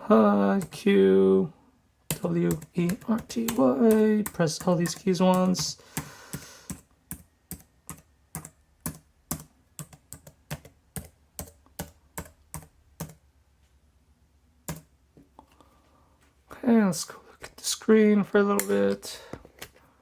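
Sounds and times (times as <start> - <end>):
laptop keys clicking: 2.1 - 13.2.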